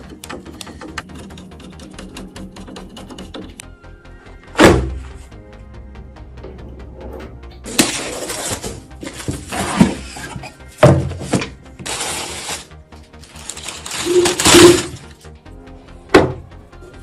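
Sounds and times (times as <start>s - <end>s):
faint background music: 0.0s - 17.0s
rustling and scraping of packaging: 7.7s - 15.3s.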